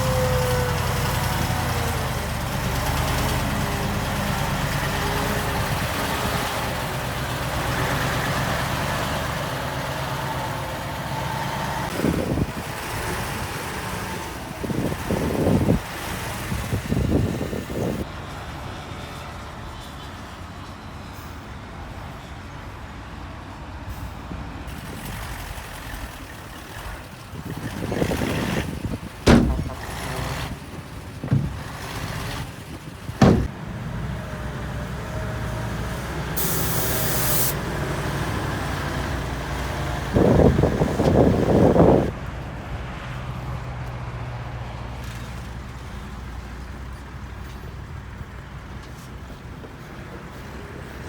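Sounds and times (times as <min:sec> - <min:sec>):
heavy diesel machinery running: 0:00.0 - 0:19.5, 0:24.6 - 0:43.6
air brakes hissing: 0:36.4 - 0:37.6.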